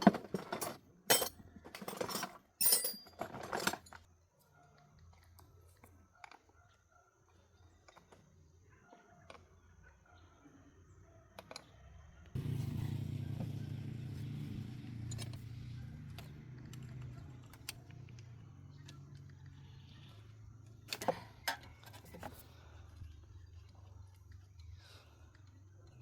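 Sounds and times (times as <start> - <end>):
engine starting and running: 12.4 - 20.1.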